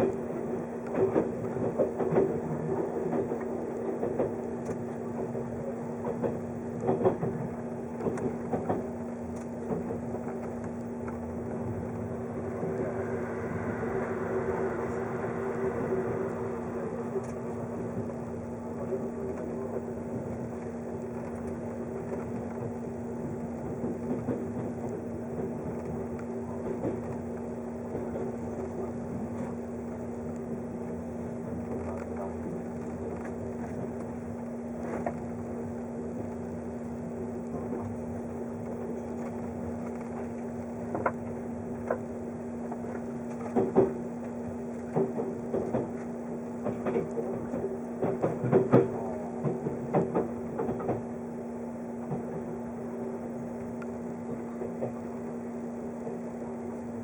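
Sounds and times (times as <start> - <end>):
wheels clacking on track: 0.0 - 34.2, 42.8 - 51.3, 52.0 - 52.9
train running hum: 0.0 - 57.0.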